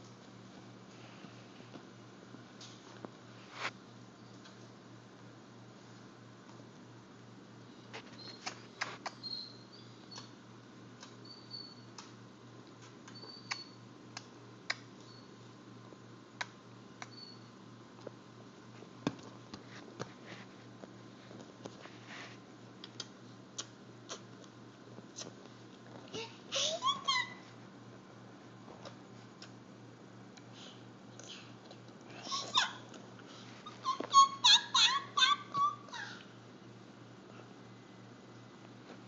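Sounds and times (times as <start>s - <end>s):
baby lip smacks: 22.8s - 24.5s
baby high squeaks: 26.6s - 27.4s, 32.2s - 32.9s, 33.6s - 36.2s.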